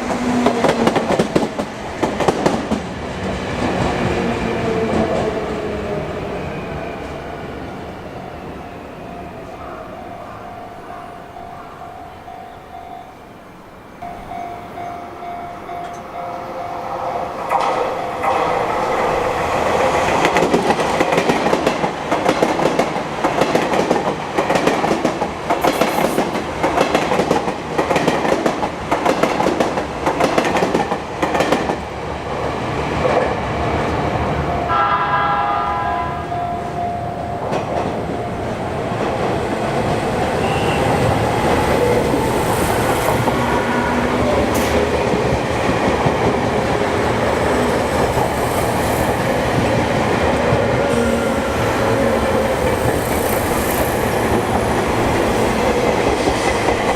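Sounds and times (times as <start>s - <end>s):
train wheels clacking on rails: 0.0s - 7.2s, 14.0s - 34.8s, 36.7s - 56.9s
train horn blast: 34.7s - 36.8s, 40.4s - 41.3s.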